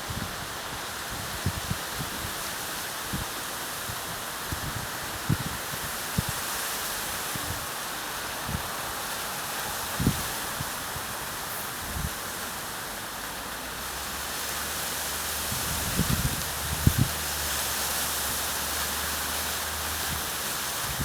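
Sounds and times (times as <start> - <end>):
gusts buffeting microphone: 0.0 - 6.6, 9.7 - 12.4, 15.2 - 17.5, 19.9 - 21.0.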